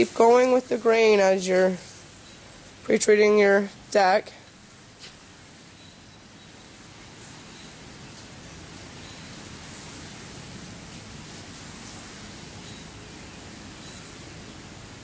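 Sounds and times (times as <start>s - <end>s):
spraying cleaner on wooden deck: 0.0s - 15.0s.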